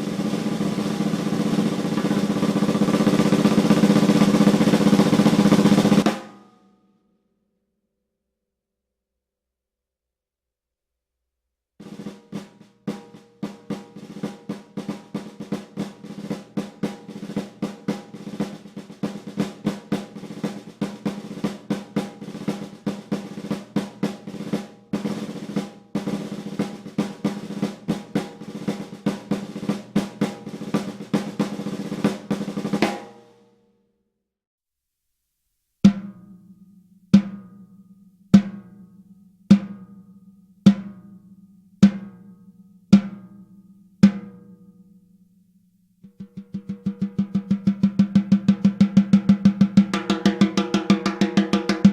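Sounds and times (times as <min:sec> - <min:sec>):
snare drum rolls and strokes: 0:00.0 - 0:06.5, 0:11.8 - 0:33.5, 0:39.5 - 0:40.1, 0:40.7 - 0:41.2, 0:41.8 - 0:43.4, 0:44.0 - 0:44.5, 0:46.0 - 0:51.9.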